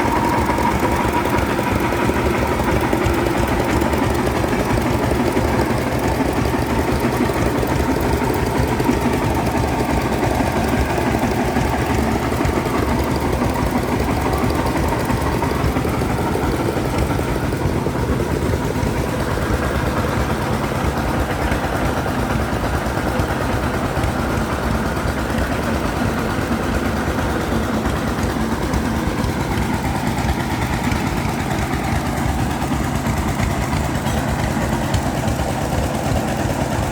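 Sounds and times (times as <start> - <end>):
old engine running steadily: 0.0 - 36.9.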